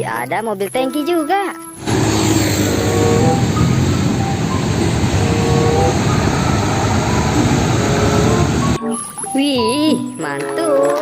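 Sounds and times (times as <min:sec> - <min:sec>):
water spray rushing: 0:01.8 - 0:08.8.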